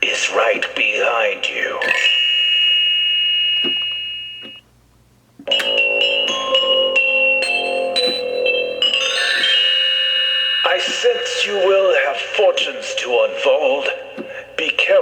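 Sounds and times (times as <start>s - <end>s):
spooky electronic chiming music: 5.5s - 14.1s.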